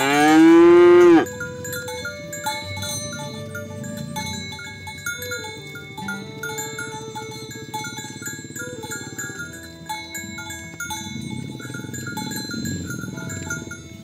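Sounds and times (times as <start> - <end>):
cow mooing: 0.0 - 1.3
chiming mallet music: 0.0 - 14.0.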